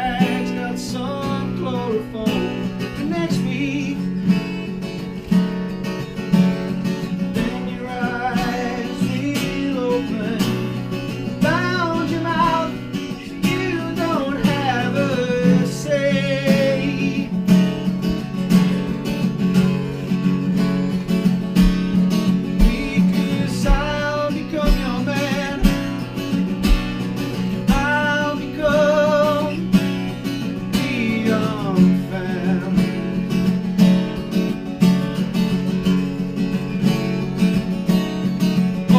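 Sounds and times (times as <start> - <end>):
acoustic guitar strumming: 0.0 - 38.9.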